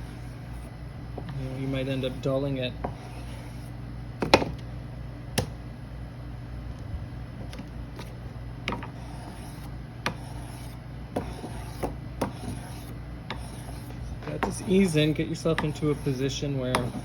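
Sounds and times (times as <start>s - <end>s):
blade rubbing on sandpaper: 9.0s - 17.0s.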